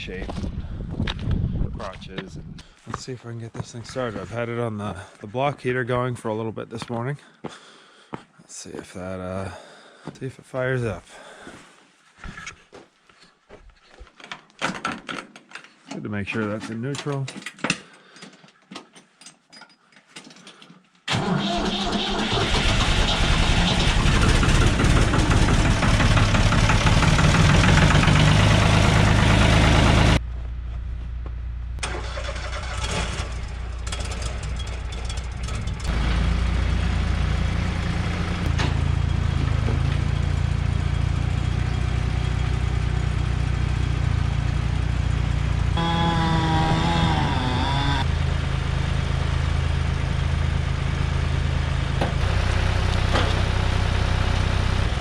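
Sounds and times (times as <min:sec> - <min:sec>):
sawmill engine running: 0:21.1 - 0:30.2, 0:31.8 - 0:55.0.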